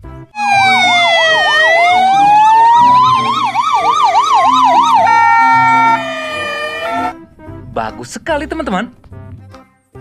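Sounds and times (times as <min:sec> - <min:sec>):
ambulance siren warbling: 0:00.4 - 0:07.2.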